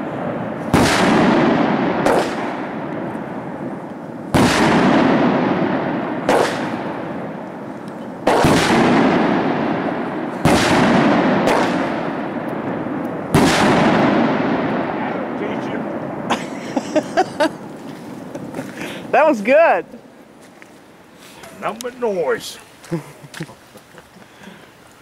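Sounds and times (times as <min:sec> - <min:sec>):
firework bangs with rumbling echo: 0:00.0 - 0:16.4.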